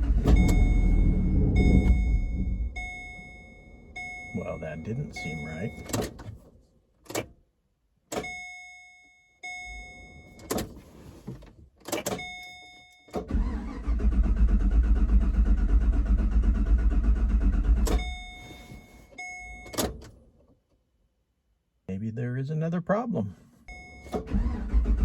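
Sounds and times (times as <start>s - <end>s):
dashboard warning chimes: 0.0s - 6.4s, 8.1s - 11.2s, 11.9s - 13.8s, 17.9s - 20.1s, 23.6s - 24.9s
car engine cranking: 0.0s - 7.4s, 9.6s - 20.5s, 23.7s - 25.0s.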